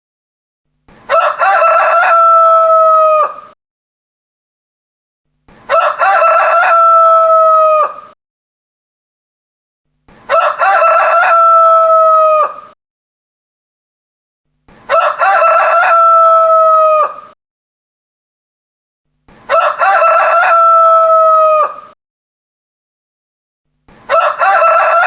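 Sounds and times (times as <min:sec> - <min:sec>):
rooster crowing: 0:01.1 - 0:03.6, 0:05.7 - 0:08.2, 0:10.3 - 0:12.8, 0:14.9 - 0:17.4, 0:19.5 - 0:22.0, 0:24.1 - 0:25.0.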